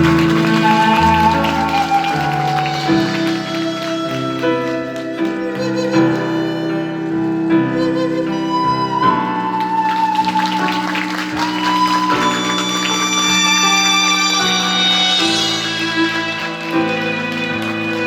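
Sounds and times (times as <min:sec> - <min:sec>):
high sustained melody: 0:10.5 - 0:18.0.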